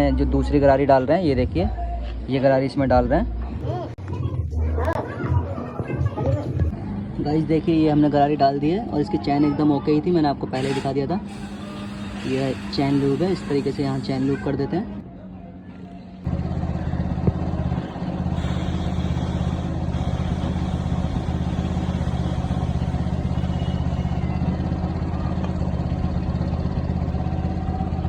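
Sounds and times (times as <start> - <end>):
motorcycle engine running: 10.5 - 15.1, 15.8 - 28.0.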